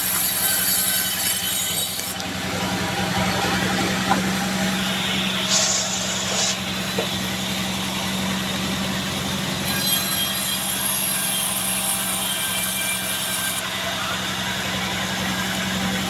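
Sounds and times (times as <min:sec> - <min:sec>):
saw blade cutting log: 0:00.0 - 0:13.7
band sawmill engine drone: 0:01.1 - 0:09.7, 0:13.1 - 0:16.0
high hiss: 0:05.0 - 0:07.3.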